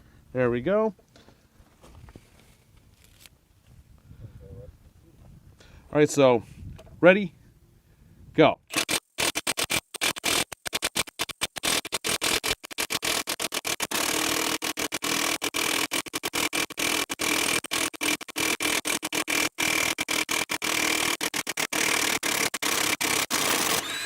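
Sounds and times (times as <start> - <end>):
impact wrench hammering: 8.8 - 24.0.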